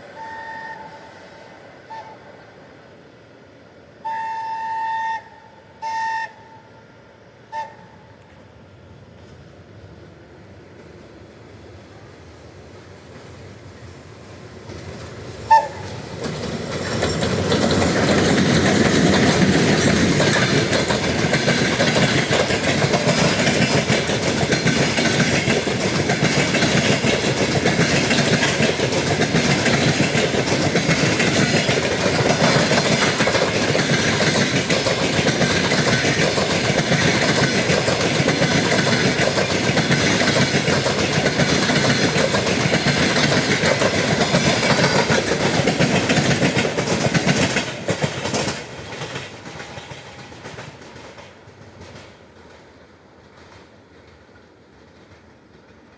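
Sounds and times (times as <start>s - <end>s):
train horn toot: 0.0s - 2.6s, 4.0s - 8.3s, 15.5s - 16.0s
train wheels clattering: 14.6s - 55.9s.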